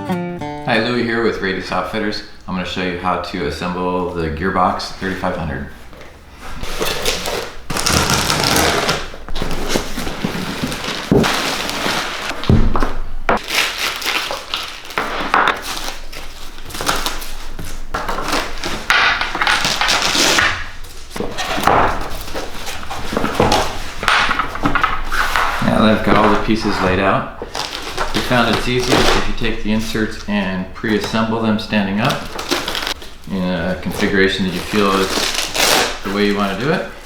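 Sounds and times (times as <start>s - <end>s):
plastic parts rustling and scraping: 5.0s - 37.0s
dull thumps: 5.7s - 13.5s.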